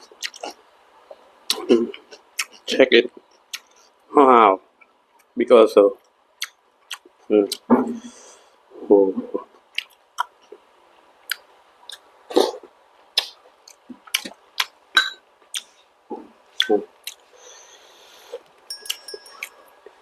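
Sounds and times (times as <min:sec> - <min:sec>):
mouth clicks and smacks: 0:00.2 - 0:02.7, 0:06.0 - 0:07.7, 0:09.6 - 0:10.6, 0:11.2 - 0:14.8, 0:15.5 - 0:15.7, 0:16.6 - 0:17.3.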